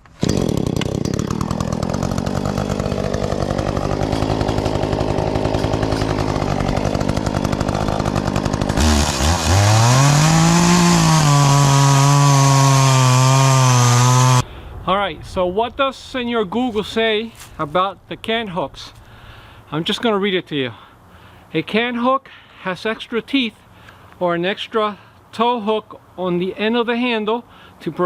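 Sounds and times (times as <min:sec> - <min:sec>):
chainsaw idling and revving: 0:00.0 - 0:14.4.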